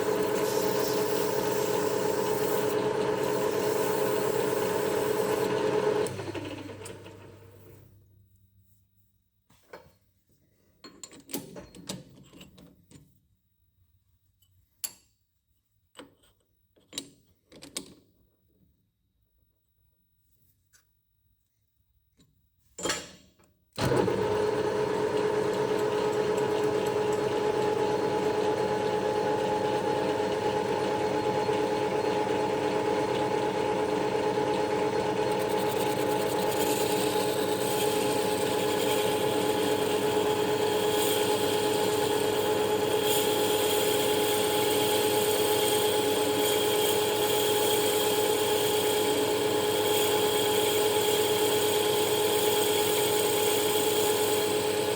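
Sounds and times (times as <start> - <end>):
machine tool motor humming: 0.0 - 6.2, 25.4 - 54.9.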